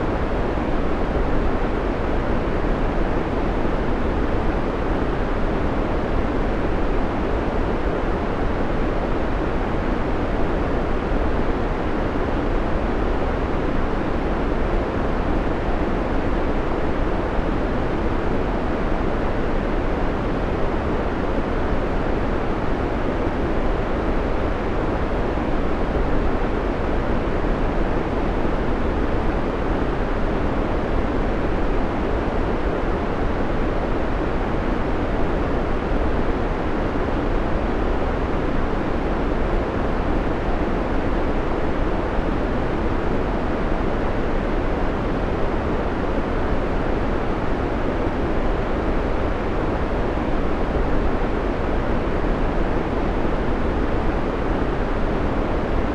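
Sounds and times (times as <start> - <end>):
white noise hiss: 0.0 - 55.9.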